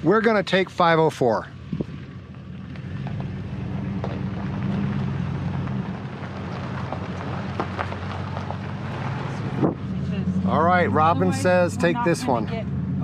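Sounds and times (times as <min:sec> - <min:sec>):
gravel ticking against vehicle: 0:00.0 - 0:09.8
vehicle engine and tyres droning: 0:00.0 - 0:13.0.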